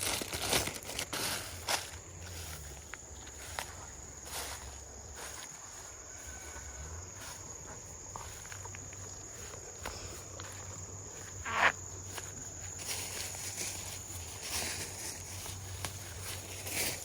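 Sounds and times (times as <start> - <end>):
footsteps: 0.0 - 17.0
high-pitched insect drone: 1.3 - 14.4.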